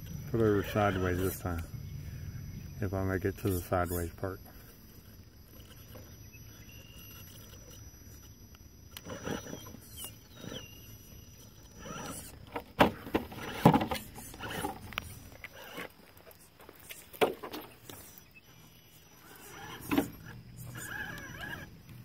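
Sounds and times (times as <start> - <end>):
electric motor whirring: 0.0 - 1.6, 4.6 - 12.6, 13.3 - 17.1, 17.8 - 22.0
tires scraping and knocking on rock: 9.0 - 22.0.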